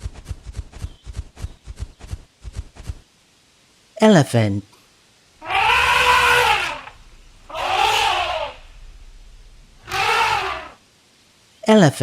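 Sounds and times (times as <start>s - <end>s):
elephant trumpeting: 5.4s - 10.8s.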